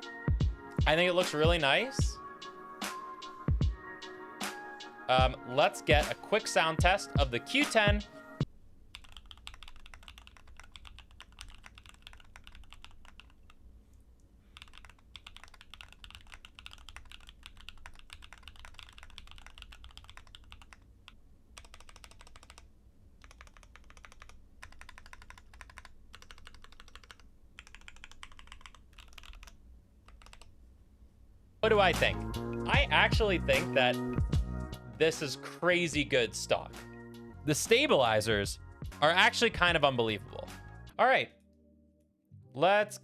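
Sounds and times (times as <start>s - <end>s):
mechanical keyboard typing: 8.9s - 13.6s, 14.6s - 20.9s, 21.6s - 30.6s.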